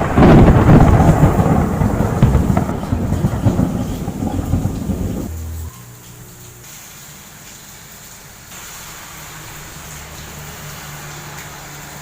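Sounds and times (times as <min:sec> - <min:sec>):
low motor hum: 0:00.0 - 0:06.6
rain hiss: 0:00.0 - 0:12.0.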